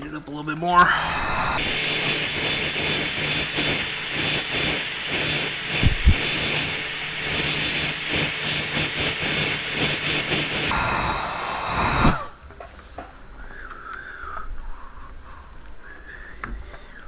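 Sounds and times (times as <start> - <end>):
heat gun blowing: 0.7 - 12.6.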